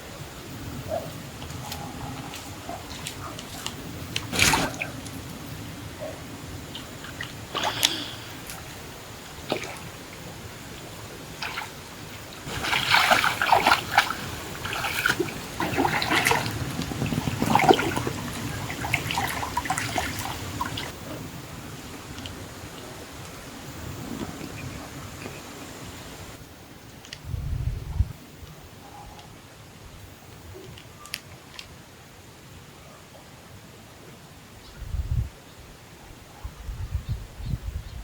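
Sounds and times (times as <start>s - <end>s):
water splashing and sloshing: 0.7s - 21.0s.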